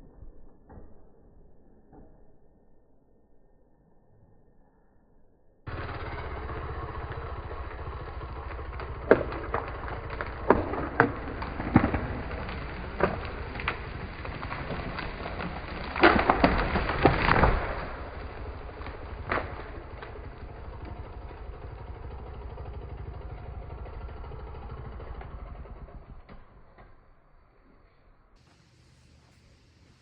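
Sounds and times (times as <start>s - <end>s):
tree wood cracking: 5.7s - 26.9s
engine running: 5.7s - 27.6s, 28.4s - 30.0s.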